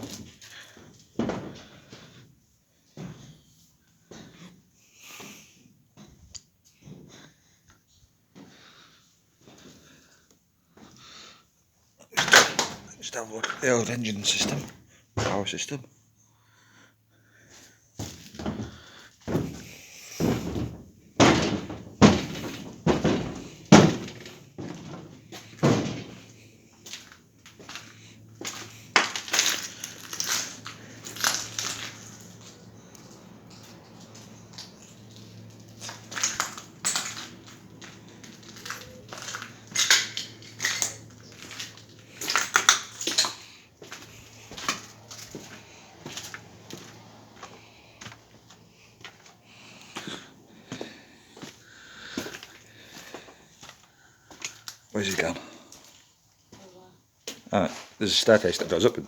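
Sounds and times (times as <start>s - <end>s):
heavy footsteps on debris: 0.0s - 2.2s, 17.5s - 56.0s.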